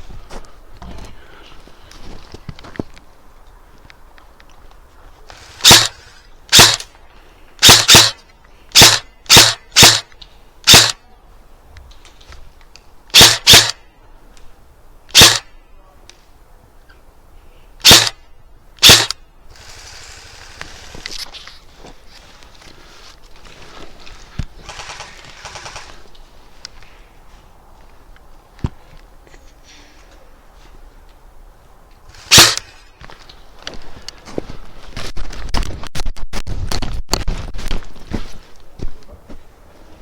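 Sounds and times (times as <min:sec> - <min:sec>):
airsoft gun shots: 0:05.5 - 0:06.9, 0:07.6 - 0:08.2, 0:08.8 - 0:10.1, 0:10.7 - 0:11.0, 0:13.1 - 0:13.8, 0:15.1 - 0:15.5, 0:17.8 - 0:18.2, 0:18.8 - 0:19.2, 0:32.2 - 0:32.8.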